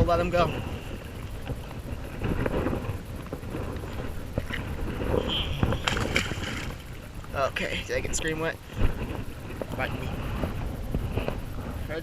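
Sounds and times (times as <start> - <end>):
wind rumble on microphone: 0.0 - 12.0.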